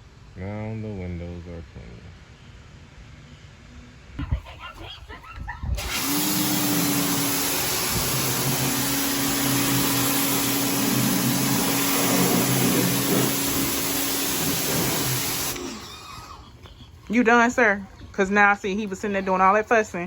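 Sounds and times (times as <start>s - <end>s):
water jet hissing: 5.8s - 16.4s
pressure washer motor humming: 5.8s - 16.7s.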